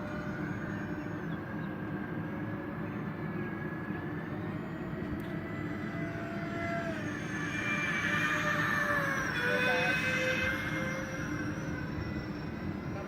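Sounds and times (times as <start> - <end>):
model jet fans droning: 0.0 - 13.0.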